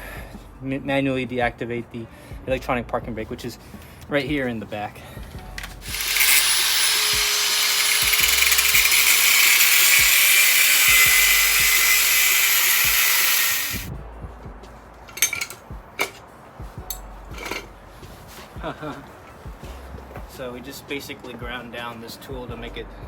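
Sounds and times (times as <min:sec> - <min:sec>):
power grinder grinding metal: 0:05.6 - 0:13.9, 0:15.1 - 0:16.2, 0:17.4 - 0:17.7.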